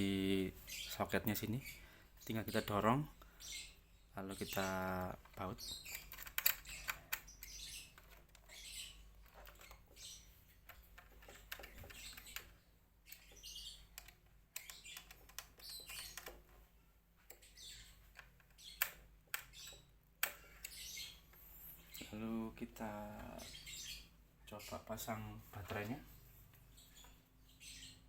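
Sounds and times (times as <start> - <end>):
birds chirping faintly: 0.0 - 28.0
screws clicking into laptop: 5.9 - 8.5.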